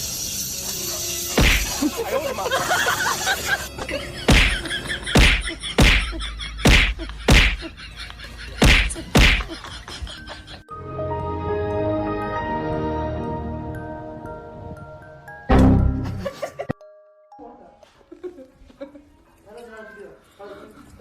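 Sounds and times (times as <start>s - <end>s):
sharp whacks: 1.4s - 1.8s, 4.3s - 7.6s, 8.6s - 9.5s.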